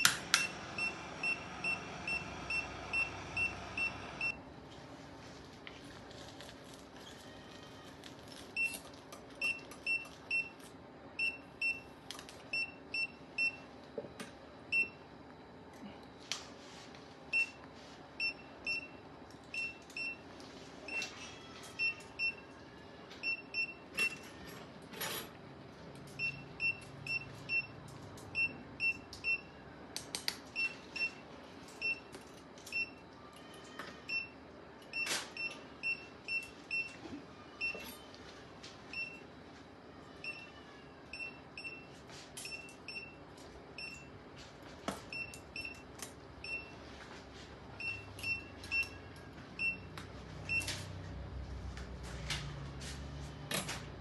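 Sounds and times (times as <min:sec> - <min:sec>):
patient monitor beeping: 0:00.0 - 0:04.4, 0:40.2 - 0:44.2, 0:45.0 - 0:47.0, 0:47.7 - 0:50.8.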